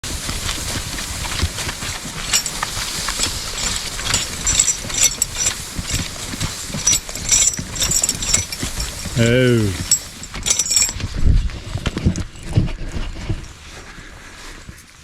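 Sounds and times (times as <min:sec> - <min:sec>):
horse hoofbeats: 0:00.0 - 0:13.9
harness chains jingling: 0:00.7 - 0:11.2.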